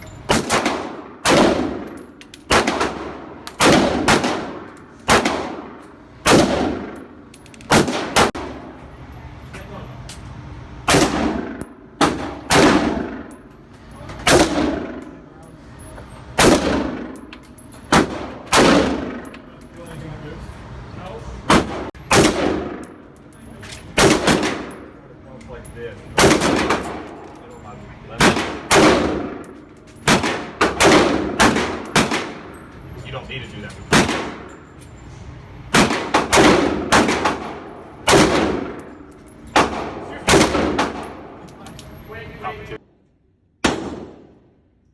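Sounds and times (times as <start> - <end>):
gunshots with echoing tail: 0.3 - 1.9, 2.5 - 7.0, 7.7 - 8.6, 10.9 - 13.3, 16.4 - 17.2, 17.9 - 19.3, 21.5 - 23.0, 24.0 - 24.8, 28.2 - 32.5, 35.8 - 39.0, 39.6 - 41.4, 43.6 - 44.4.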